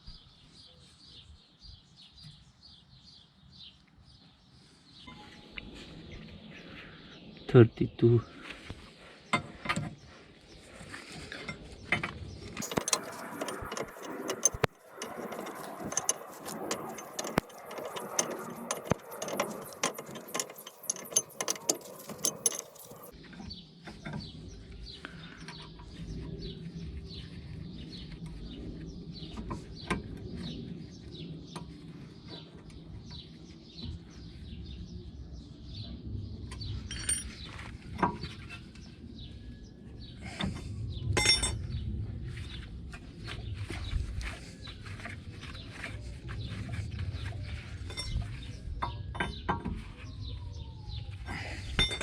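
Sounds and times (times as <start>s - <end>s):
metal tools clinking and ratcheting: 12.6s - 23.2s, 36.8s - 38.7s, 41.2s - 41.7s, 47.8s - 49.4s, 51.6s - 52.0s.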